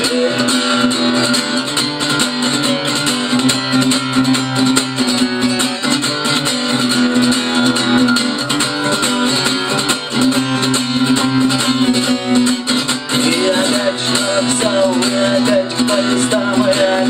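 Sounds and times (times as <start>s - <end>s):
guitar strumming: 0.0s - 17.0s.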